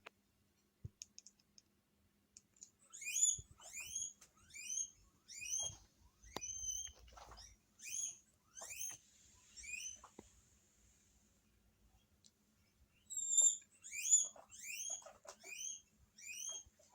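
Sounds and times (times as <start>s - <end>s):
guinea pig wheeking: 2.8s - 10.3s, 12.0s - 16.9s.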